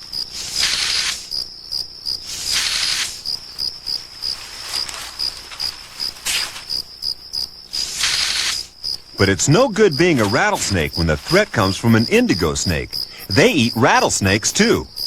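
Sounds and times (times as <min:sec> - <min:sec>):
snake hissing: 0:00.0 - 0:01.5, 0:02.1 - 0:03.4, 0:07.7 - 0:13.9
crickets chirping: 0:00.0 - 0:15.0.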